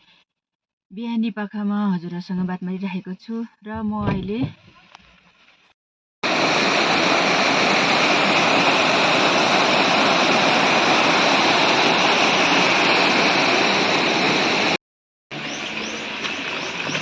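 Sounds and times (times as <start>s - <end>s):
rush of falling water: 6.2s - 17.0s.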